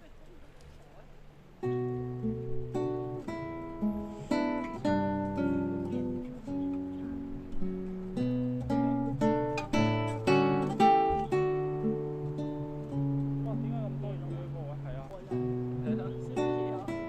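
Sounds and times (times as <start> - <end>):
acoustic guitar chords: 1.2 - 17.0.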